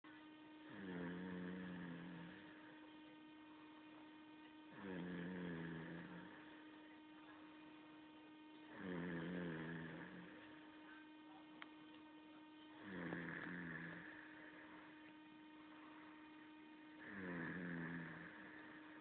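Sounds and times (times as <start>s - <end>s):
steady electrical hum: 0.0s - 19.0s
pitched snores: 0.6s - 2.8s, 4.7s - 6.6s, 8.7s - 10.4s, 12.8s - 14.9s, 16.9s - 19.0s.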